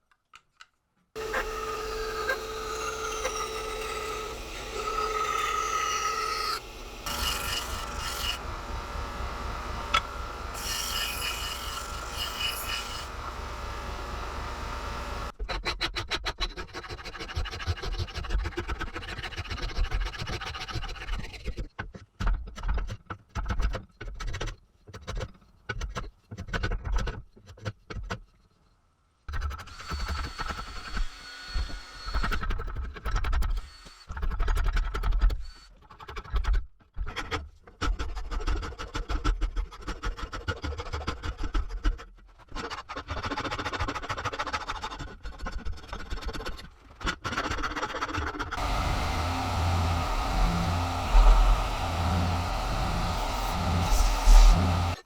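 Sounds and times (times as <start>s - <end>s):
rasping strokes on wood: 1.2s - 15.3s, 48.6s - 55.0s
wood scraping hiss: 1.2s - 15.3s, 48.6s - 55.0s.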